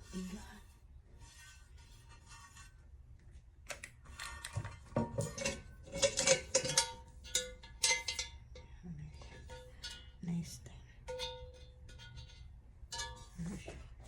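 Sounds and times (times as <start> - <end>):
cast iron pot clanking: 4.5 - 10.2, 11.0 - 14.0.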